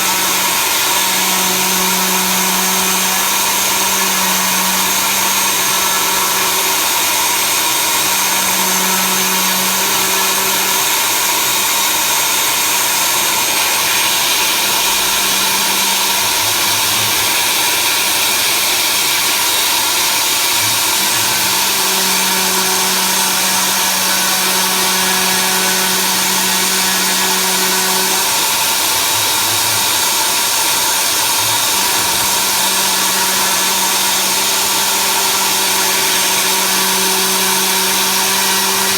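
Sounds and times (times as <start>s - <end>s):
spindle whirring: 0.0s - 38.9s
low motor hum: 20.6s - 30.0s.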